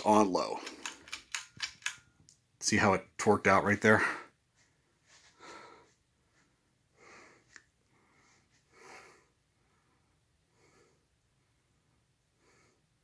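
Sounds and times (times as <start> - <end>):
faint breaths: 3.8 - 13.0.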